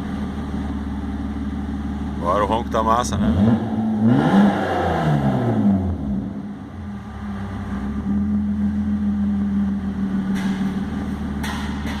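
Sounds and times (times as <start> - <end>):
car engine idling: 0.0 - 4.1, 5.6 - 12.0.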